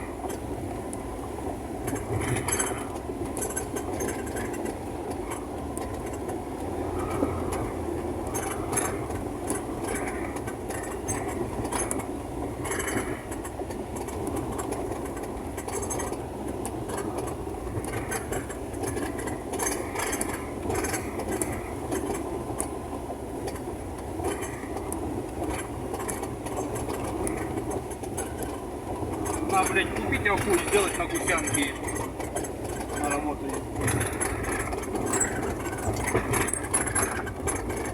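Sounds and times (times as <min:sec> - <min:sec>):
engine and road noise drone: 0:00.0 - 0:37.9
rattles and clinks in cabin: 0:00.0 - 0:37.9.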